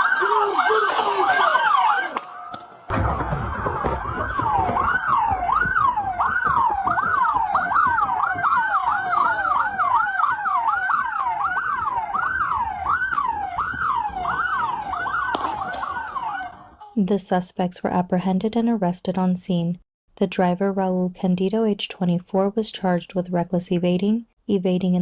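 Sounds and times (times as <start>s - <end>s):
police siren yelping: 0.0s - 16.9s.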